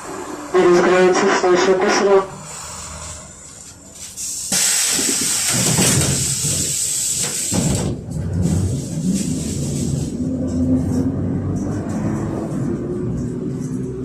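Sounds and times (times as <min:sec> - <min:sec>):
low rumble of trolleybus: 0:00.0 - 0:14.0
compressed air hissing: 0:04.2 - 0:07.6.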